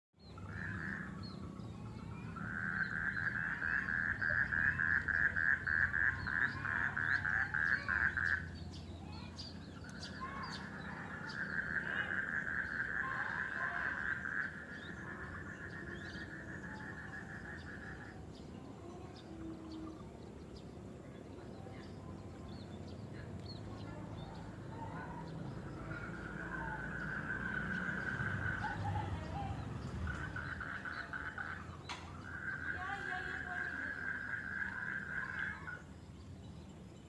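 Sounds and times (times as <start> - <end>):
faint bird chirps: 0.2 - 37.0
pulsed animal trill: 24.8 - 35.9.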